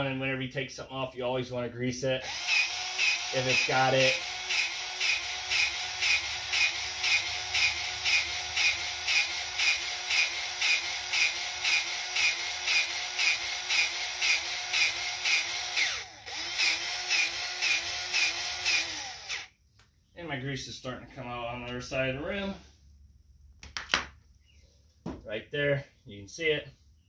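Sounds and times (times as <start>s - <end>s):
powered grease gun pumping: 2.2s - 19.5s.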